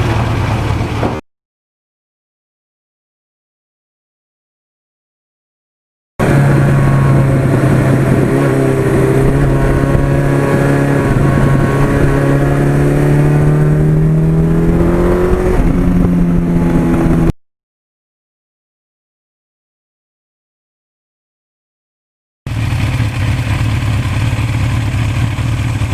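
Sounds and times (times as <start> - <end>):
motorcycle engine accelerating: 6.2 - 17.4, 22.5 - 25.9.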